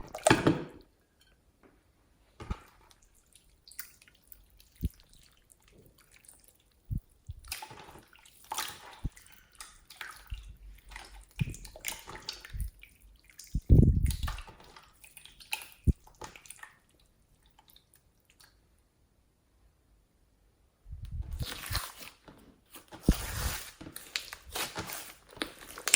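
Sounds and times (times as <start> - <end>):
slime squelching and popping: 2.5 - 16.8, 21.1 - 22.2.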